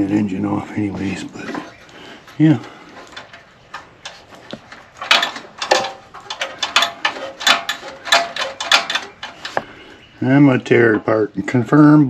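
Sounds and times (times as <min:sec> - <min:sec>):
metallic clicks and rattles: 0:02.6 - 0:09.8.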